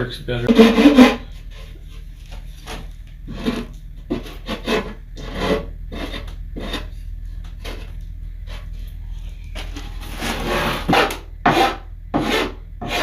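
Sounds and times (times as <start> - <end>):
hand tool scraping plywood edge: 0.5 - 1.7, 2.6 - 6.9, 9.7 - 13.0.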